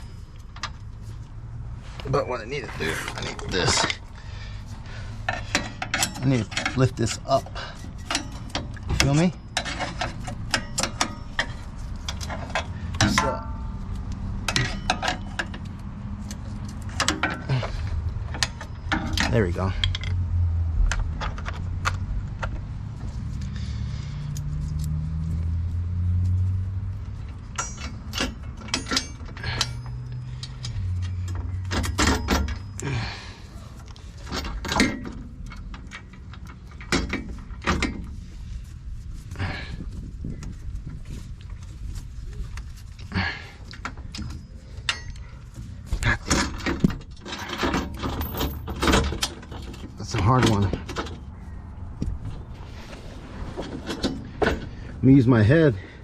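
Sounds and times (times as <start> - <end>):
metal hardware clicking and clinking: 5.2 - 22.7, 24.2 - 38.2, 42.5 - 52.4
low rumble: 51.2 - 56.0.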